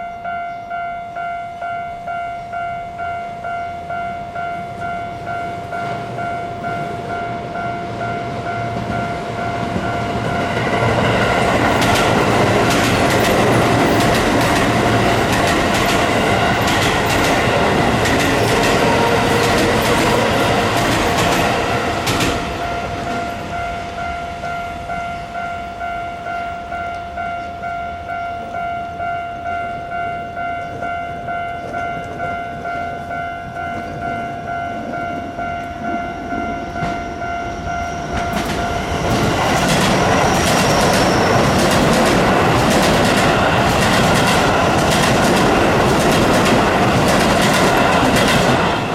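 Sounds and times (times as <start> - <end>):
level crossing warning bell: 0.0 - 48.9
train wheels clacking over rail joints: 8.7 - 23.4, 38.1 - 48.9.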